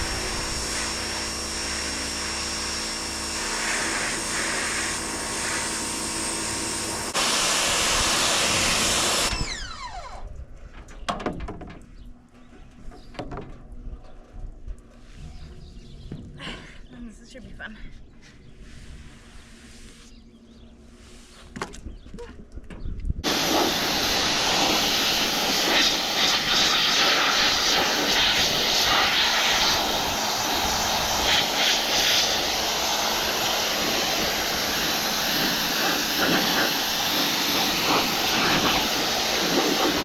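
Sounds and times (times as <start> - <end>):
power sprayer hissing: 0.0 - 9.9, 23.2 - 40.0.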